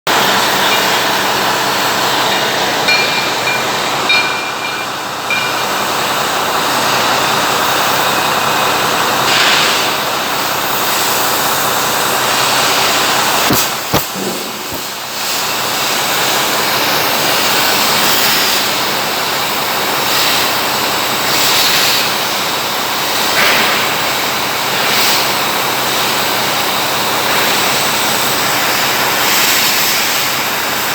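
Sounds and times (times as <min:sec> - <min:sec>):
loud machine roar: 0:00.1 - 0:17.1.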